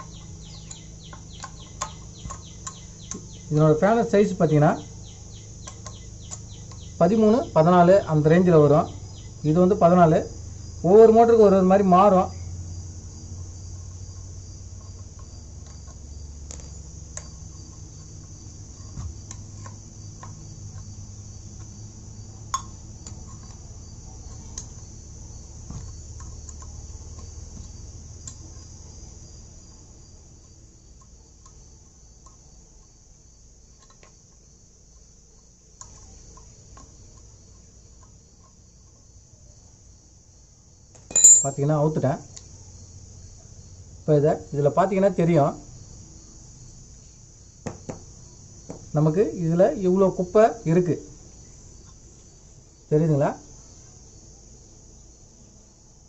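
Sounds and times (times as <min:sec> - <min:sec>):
crickets chirring: 0:00.0 - 0:56.0
metal clicks and clinks: 0:41.0 - 0:41.7.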